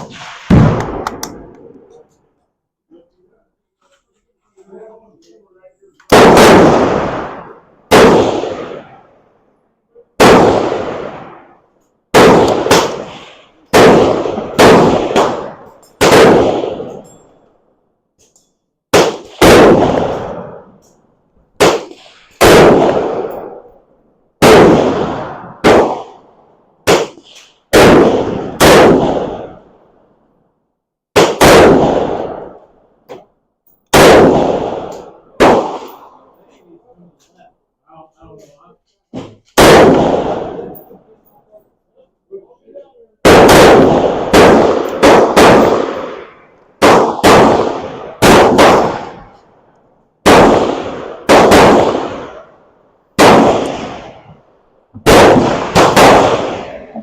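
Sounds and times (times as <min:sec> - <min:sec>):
rifle shots: 0:00.0 - 0:02.0, 0:06.1 - 0:09.1, 0:10.2 - 0:17.1, 0:18.9 - 0:20.8, 0:21.6 - 0:23.8, 0:24.4 - 0:29.8, 0:31.1 - 0:33.2, 0:33.9 - 0:36.3, 0:39.2 - 0:41.0, 0:43.2 - 0:49.5, 0:50.2 - 0:54.4, 0:55.0 - 0:57.0.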